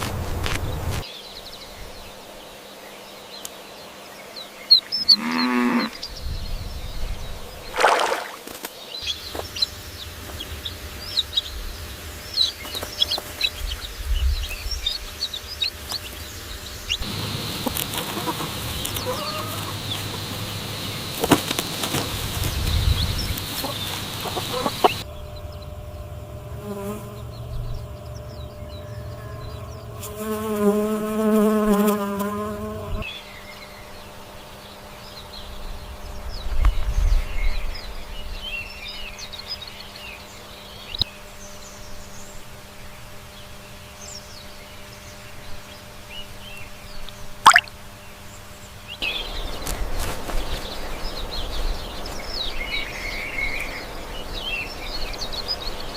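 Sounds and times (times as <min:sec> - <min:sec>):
fowl calls: 0:17.1 - 0:21.3, 0:23.3 - 0:25.0
buzzing insect: 0:26.6 - 0:27.2, 0:29.5 - 0:33.1
high chirps: 0:47.5 - 0:47.7.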